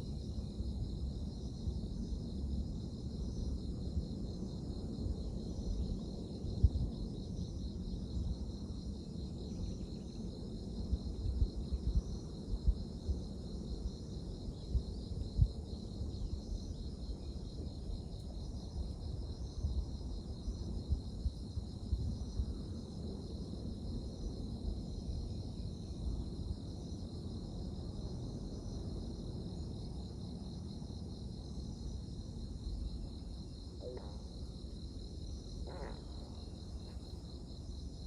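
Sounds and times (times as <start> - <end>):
insects chirping in a trill: 0.0 - 38.0
wind on microphone: 10.7 - 26.5.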